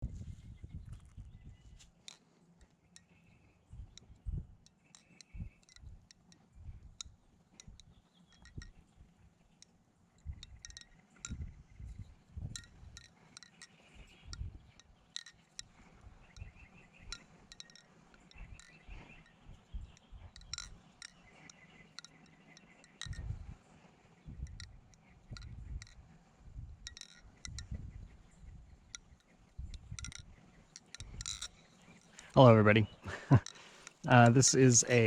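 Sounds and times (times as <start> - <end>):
metallic clicks of knife handles: 4.0 - 6.4, 7.0 - 8.8, 10.2 - 11.5, 12.5 - 15.7, 17.1 - 19.4, 20.3 - 23.3, 24.4 - 24.7, 25.3 - 26.0, 26.9 - 27.7, 28.9 - 32.4, 33.1 - 35.0.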